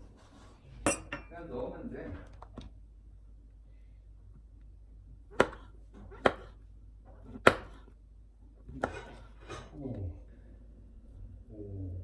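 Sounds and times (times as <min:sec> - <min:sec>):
knife chopping on cutting board: 0:05.3 - 0:06.6, 0:07.2 - 0:07.9, 0:08.7 - 0:09.6.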